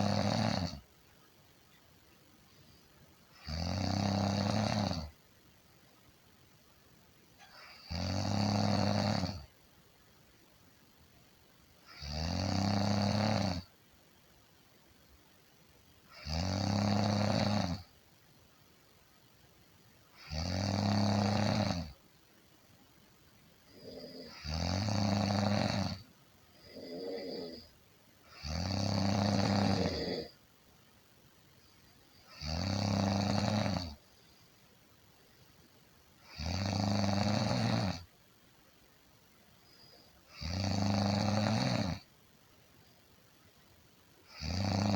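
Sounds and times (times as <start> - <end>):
person snoring: 0.0 - 0.8, 3.4 - 5.1, 7.4 - 9.5, 11.9 - 13.7, 16.1 - 17.8, 20.2 - 22.0, 23.7 - 26.0, 26.6 - 27.7, 28.3 - 30.4, 32.3 - 34.0, 36.2 - 38.1, 40.3 - 42.0, 44.3 - 44.9
soft breath: 23.6 - 24.4, 26.5 - 27.7, 34.0 - 35.8, 39.6 - 40.3.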